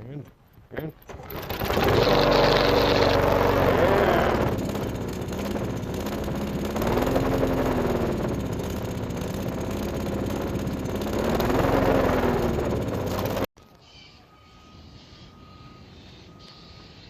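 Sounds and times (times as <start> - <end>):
lawn mower engine running: 1.0 - 13.5.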